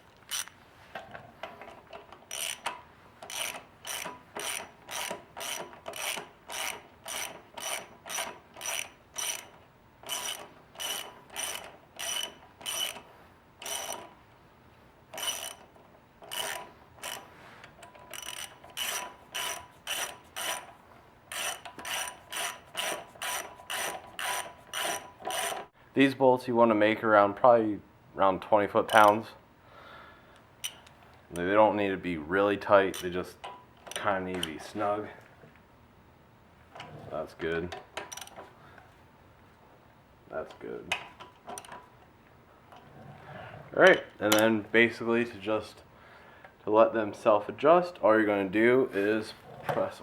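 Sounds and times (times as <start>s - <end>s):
ratchet wrench clicking: 0.3s - 0.5s, 2.3s - 13.0s, 13.6s - 14.0s, 15.2s - 15.6s, 16.3s - 17.2s, 18.1s - 20.7s, 21.3s - 25.7s.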